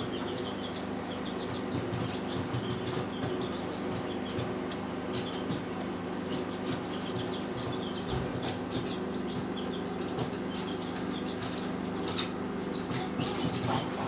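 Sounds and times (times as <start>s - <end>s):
chicks cheeping: 0.0s - 14.0s
low machine hum: 0.0s - 14.0s
scattered clicks: 10.2s - 14.0s.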